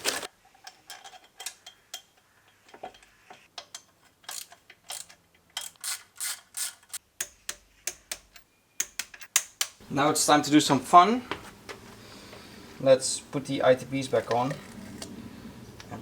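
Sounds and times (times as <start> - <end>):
ratchet wrench clicking: 4.2 - 9.7.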